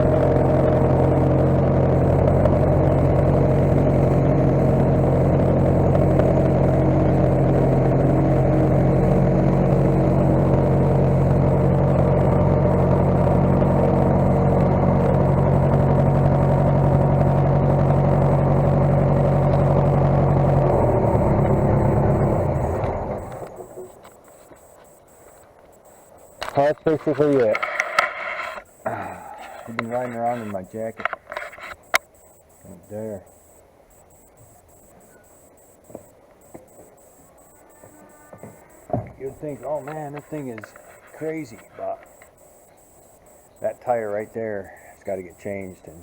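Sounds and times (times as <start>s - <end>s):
skid steer engine running: 0.0s - 25.0s.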